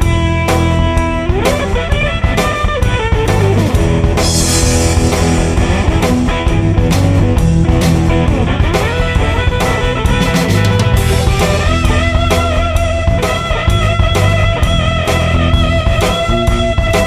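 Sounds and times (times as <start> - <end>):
bass guitar: 0.0 - 17.0
drum kit: 0.0 - 17.0.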